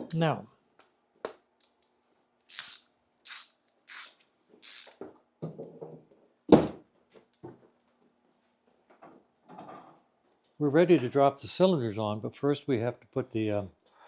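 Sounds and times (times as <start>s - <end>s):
short hissing bursts: 2.5s - 5.0s.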